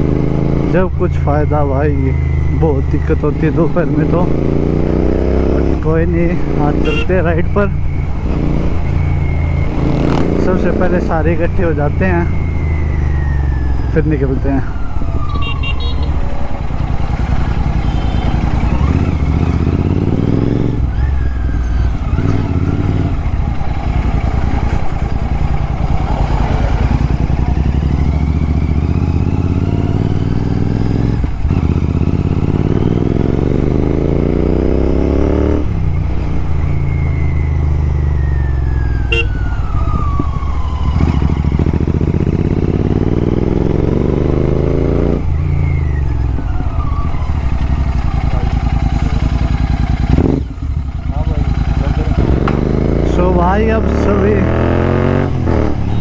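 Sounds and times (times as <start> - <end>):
motorcycle engine shifting gears: 0.0 - 56.0.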